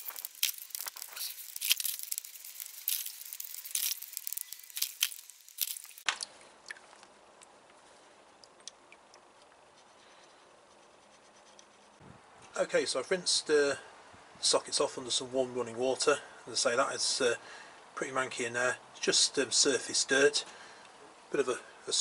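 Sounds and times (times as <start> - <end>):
small ticks: 0.0 - 6.0.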